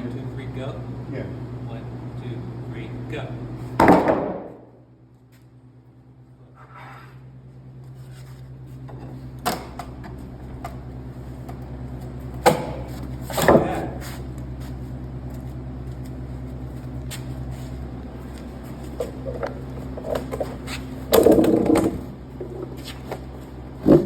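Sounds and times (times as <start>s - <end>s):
steady machine hum: 0.0s - 24.0s
sharp knocks: 3.8s - 4.6s.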